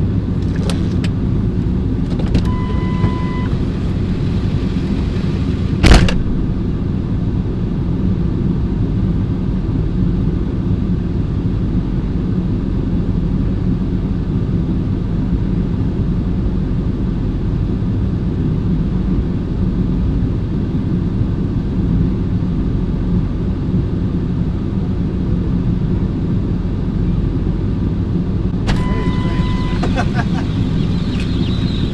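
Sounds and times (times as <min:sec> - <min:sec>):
vehicle engine low rumble: 0:00.0 - 0:31.9
sharp knock: 0:05.8 - 0:06.3.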